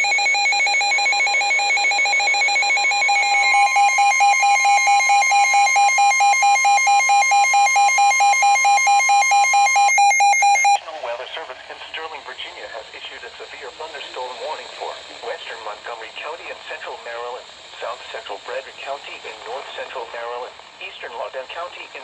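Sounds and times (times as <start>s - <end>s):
steady warning tone: 0.0s - 10.8s
weather radio alarms beeping rapidly: 0.0s - 10.8s.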